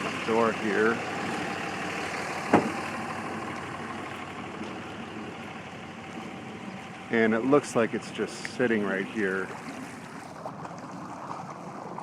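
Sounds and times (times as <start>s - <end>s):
car door slamming: 2.5s - 2.8s.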